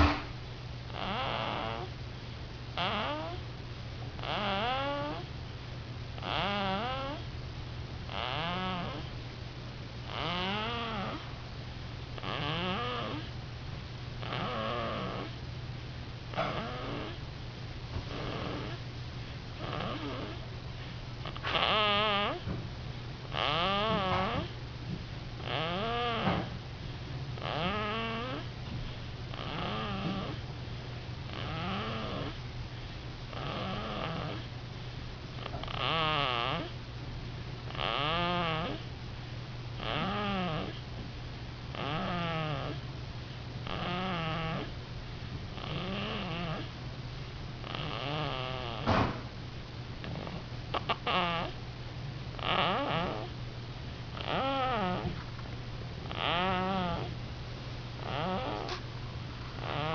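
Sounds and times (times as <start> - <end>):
baby snoring: 0.0 - 0.2, 0.9 - 1.9, 2.8 - 3.4, 4.2 - 5.3, 6.2 - 7.3, 8.1 - 9.1, 10.1 - 11.3, 12.2 - 13.3, 14.2 - 15.4, 16.3 - 17.2, 18.1 - 18.8, 19.6 - 20.4, 21.2 - 22.5, 23.3 - 24.6, 25.4 - 26.6, 27.4 - 28.5, 29.3 - 30.4, 31.3 - 32.4, 33.3 - 34.5, 35.4 - 36.8, 37.7 - 38.9, 39.8 - 40.8, 41.7 - 42.8, 43.6 - 44.7, 45.6 - 46.7, 47.6 - 49.2, 50.0 - 51.6, 52.4 - 53.3, 54.2 - 55.2, 56.0 - 57.2, 58.0 - 58.8, 59.6 - 59.9
steady low hum: 0.0 - 59.9.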